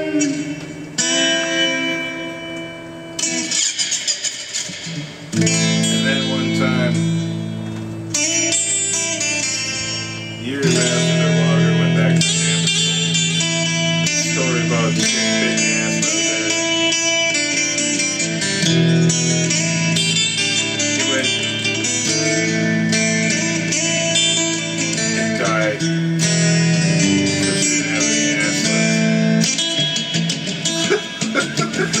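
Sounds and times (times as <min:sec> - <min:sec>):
plucked and strummed guitar: 0:00.0 - 0:32.0.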